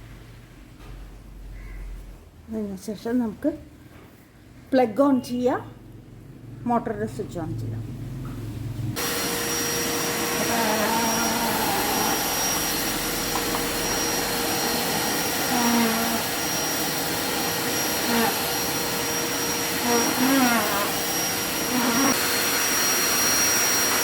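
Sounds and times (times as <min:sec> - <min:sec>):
vacuum cleaner running: 0:09.0 - 0:24.0.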